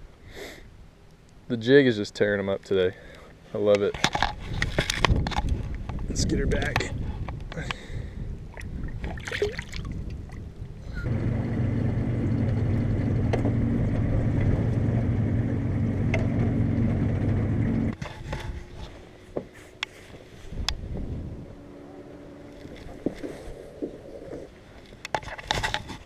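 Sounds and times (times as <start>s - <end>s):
boat motor humming: 10.1s - 25.0s.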